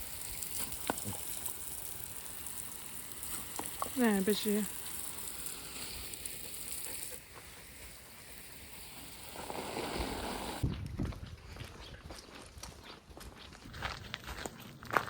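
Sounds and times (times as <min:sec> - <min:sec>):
garden hose spraying water: 0:00.0 - 0:10.6.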